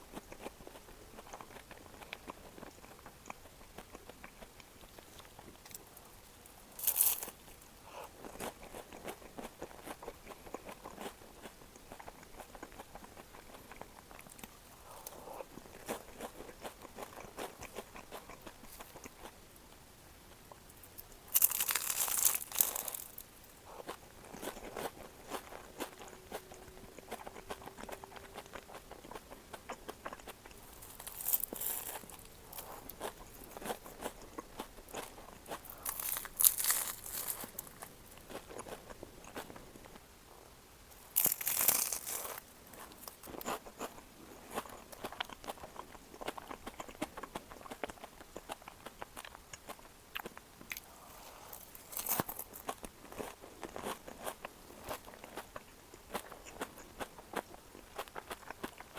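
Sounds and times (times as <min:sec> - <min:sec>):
chewing: 0:00.0 - 0:19.4, 0:20.4 - 0:40.0, 0:41.0 - 0:58.9
crunching bites of pastry: 0:06.7 - 0:07.4, 0:21.0 - 0:39.6, 0:41.0 - 0:58.9.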